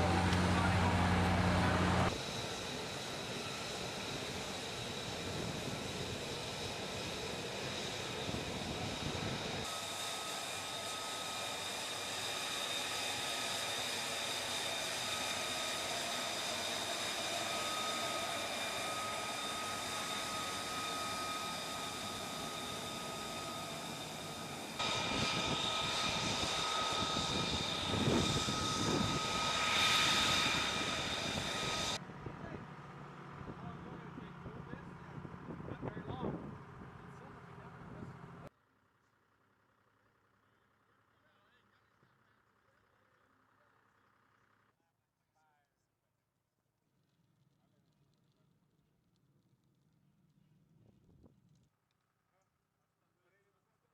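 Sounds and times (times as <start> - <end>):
jet engine whine and rush: 0.0 - 32.6.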